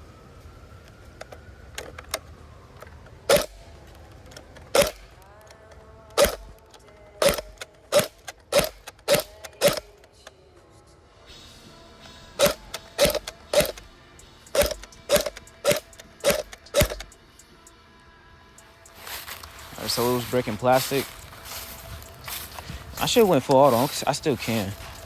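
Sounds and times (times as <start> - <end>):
airsoft gun shots: 3.3 - 3.7, 4.7 - 5.2, 6.2 - 6.6, 7.2 - 10.0, 12.4 - 13.9, 14.5 - 17.2.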